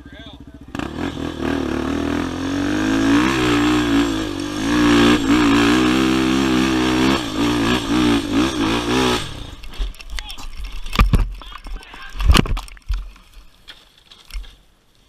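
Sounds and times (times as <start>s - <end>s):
quad engine revving: 0.0s - 9.8s.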